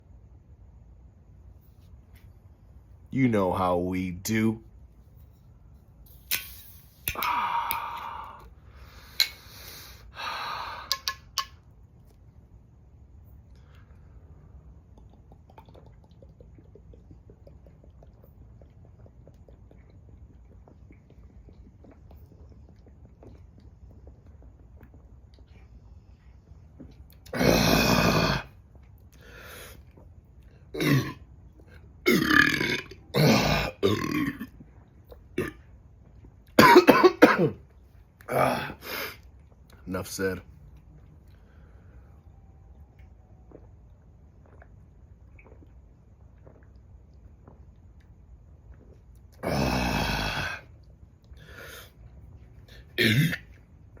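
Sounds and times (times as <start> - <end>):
person belching: 27.3 - 28.5, 30.8 - 31.2, 32.1 - 34.5, 49.4 - 50.6, 53.0 - 53.4
person burping: 27.3 - 28.5, 30.7 - 31.2, 32.0 - 34.6, 35.4 - 35.6, 36.6 - 37.6, 38.3 - 38.8, 49.4 - 50.7, 53.0 - 53.6.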